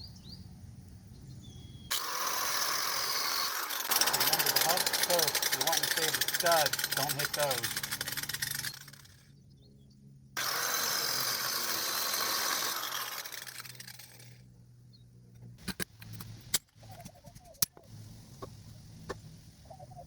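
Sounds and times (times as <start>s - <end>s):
grinder cutting metal: 1.9s - 9.2s, 10.4s - 14.4s
metal clinks: 3.9s - 9.0s.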